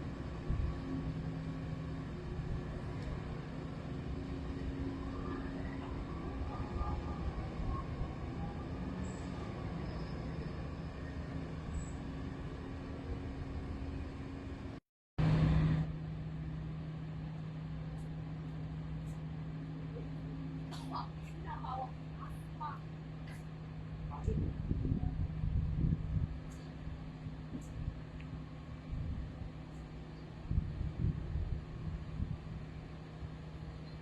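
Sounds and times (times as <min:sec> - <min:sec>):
vessel engines droning: 0:00.0 - 0:34.0.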